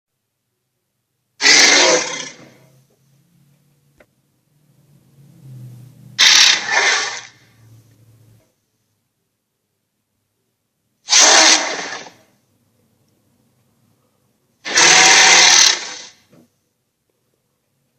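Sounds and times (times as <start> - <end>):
monster roaring: 1.4 - 2.6, 6.2 - 7.4, 11.1 - 12.2, 14.7 - 16.2.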